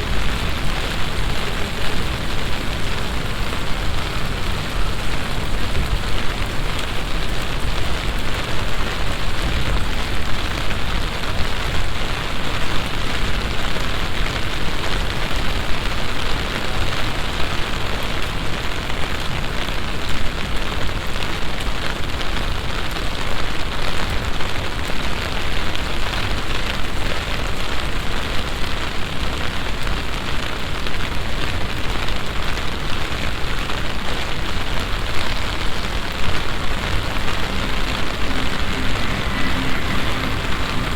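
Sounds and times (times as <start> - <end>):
heavy rain hissing: 0.0 - 21.8, 31.1 - 40.9.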